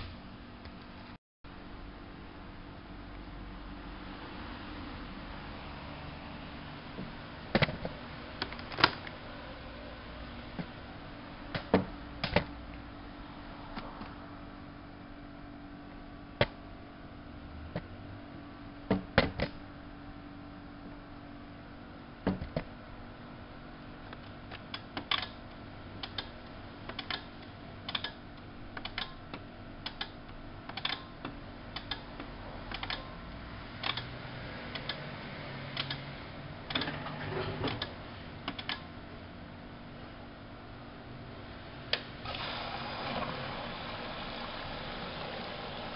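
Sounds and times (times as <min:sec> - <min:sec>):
steady low hum: 0:00.0 - 0:42.4
washing machine clicking: 0:28.8 - 0:33.1, 0:35.7 - 0:36.1, 0:36.7 - 0:38.9.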